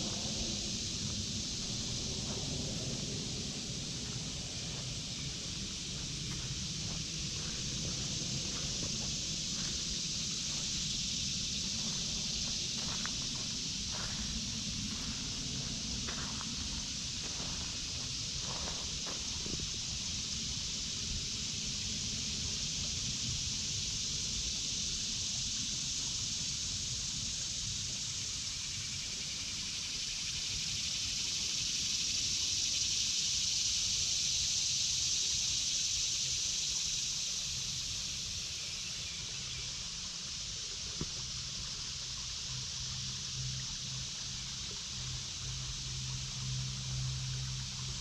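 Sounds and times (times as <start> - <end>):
low rumble: 0.0 - 10.7
cicada chorus drone: 0.0 - 48.0.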